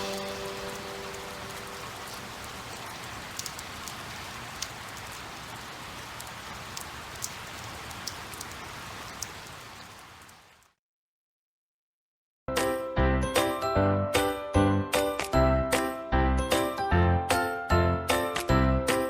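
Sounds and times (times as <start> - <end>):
raindrops pattering: 0.0 - 10.8
steady rain falling: 0.0 - 10.8.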